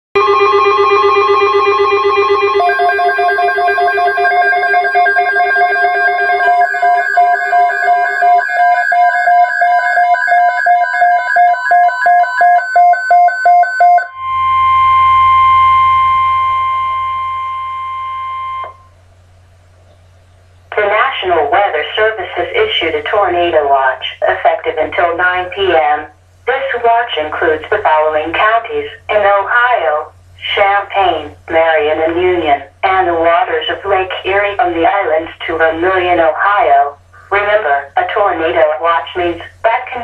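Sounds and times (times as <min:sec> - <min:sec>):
low hum: 0:00.2 - 0:10.2, 0:14.1 - 0:40.0
steady warning alert tone: 0:00.2 - 0:19.0.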